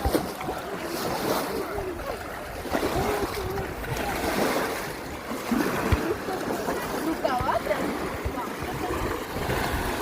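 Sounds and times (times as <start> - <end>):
faint distant voices: 0.0 - 10.0
water lapping and splashing: 0.0 - 10.0
wind noise on microphone: 7.4 - 10.0.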